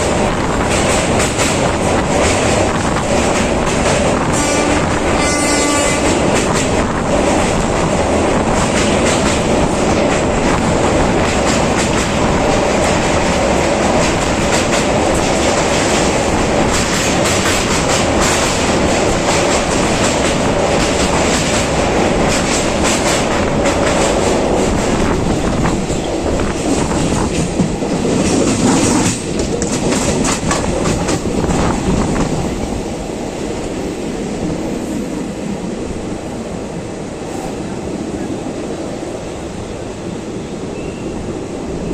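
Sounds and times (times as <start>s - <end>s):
wheels clacking over rail joints: 0.0s - 32.5s
train wheels rumbling on rail: 0.0s - 41.9s.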